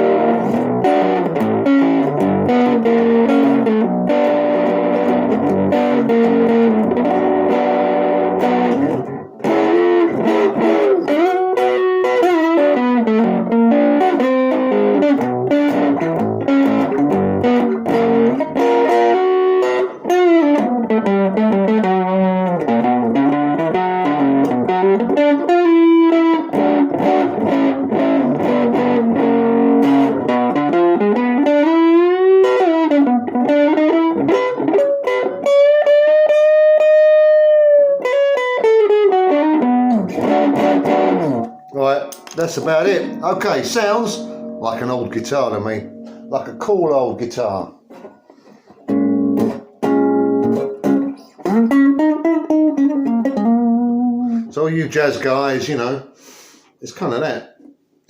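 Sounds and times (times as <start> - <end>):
electric guitar through amp: 0.0 - 55.7.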